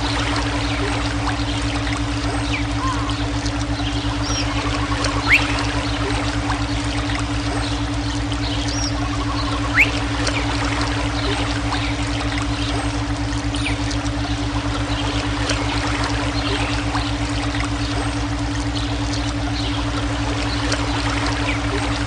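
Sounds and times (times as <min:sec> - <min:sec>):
low electronic drone: 0:00.0 - 0:22.0
running water: 0:00.0 - 0:22.0.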